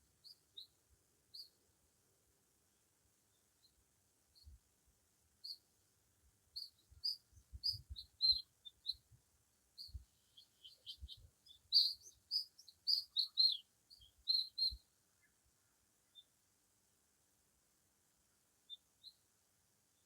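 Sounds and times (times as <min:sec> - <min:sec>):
small songbird chirping: 0:00.0 - 0:01.6, 0:02.7 - 0:04.6, 0:05.4 - 0:05.7, 0:06.4 - 0:16.4, 0:18.6 - 0:19.3.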